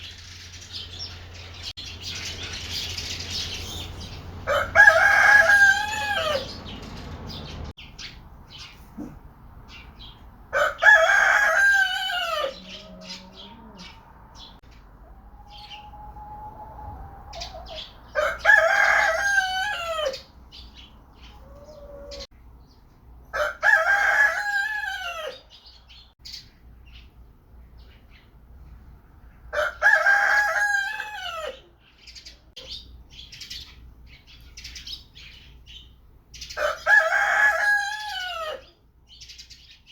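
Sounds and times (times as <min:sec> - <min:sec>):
rooster crowing: 0:04.5 - 0:06.6, 0:10.5 - 0:20.3, 0:21.4 - 0:22.3, 0:23.3 - 0:25.5, 0:29.5 - 0:31.7, 0:36.6 - 0:38.7.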